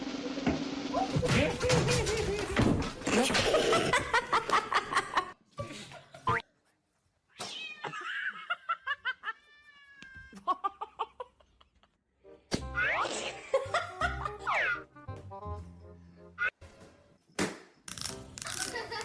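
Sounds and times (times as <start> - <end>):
cat meowing: 9.4 - 10.3.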